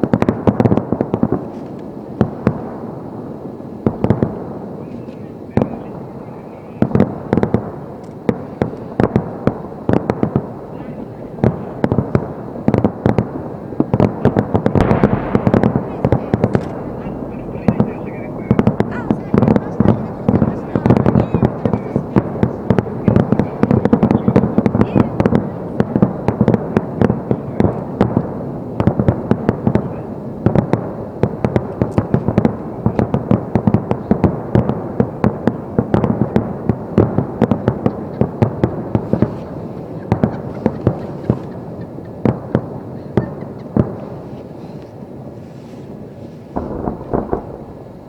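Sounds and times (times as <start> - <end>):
continuous rumble: 3.8 - 35.8, 45.8 - 48.0
firework shells bursting: 6.8 - 29.8, 46.5 - 48.0.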